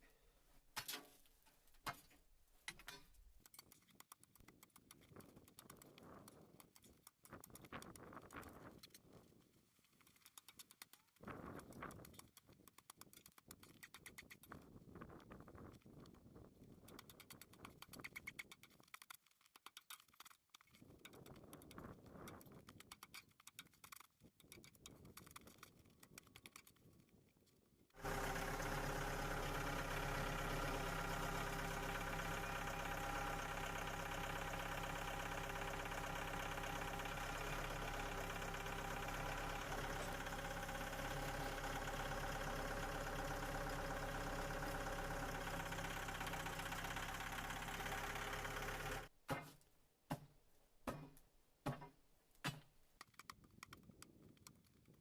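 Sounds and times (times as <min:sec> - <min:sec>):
faint irregular clicks and knocks: 0:00.0 - 0:27.6, 0:50.9 - 0:55.0
small motor humming: 0:28.0 - 0:49.1.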